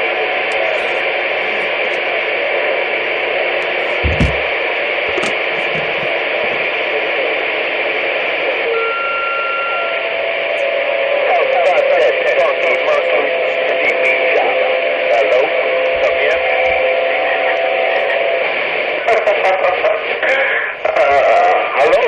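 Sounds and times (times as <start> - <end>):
radio static hiss: 0.0 - 8.9, 9.5 - 22.0
low thump: 4.0 - 6.1.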